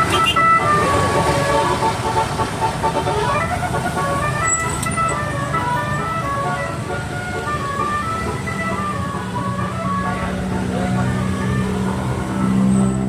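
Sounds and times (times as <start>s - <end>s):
bus horn playing a quick tune: 0.0s - 5.7s
low rumble of bus engines: 0.0s - 13.0s.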